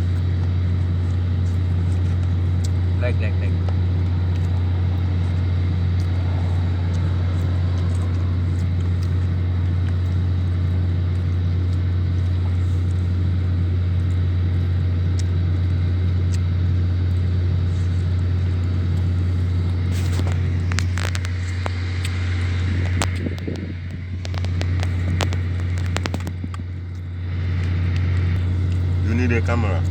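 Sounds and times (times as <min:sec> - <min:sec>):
low machinery hum: 0:00.0 - 0:29.9
sharp clicks and knocks: 0:24.2 - 0:26.6.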